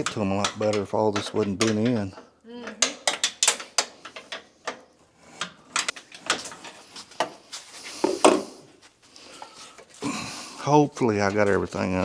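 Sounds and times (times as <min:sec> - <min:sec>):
hand tools clanking: 0:00.0 - 0:07.4.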